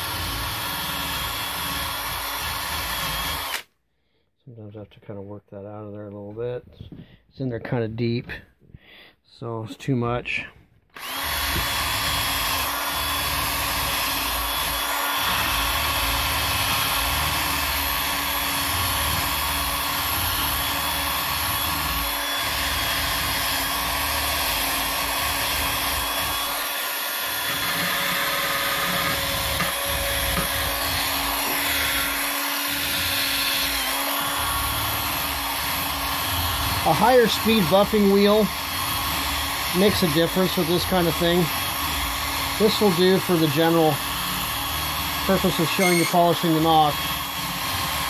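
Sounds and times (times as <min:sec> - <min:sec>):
buffing wheel motor hum: 0:11.0 - 0:48.0.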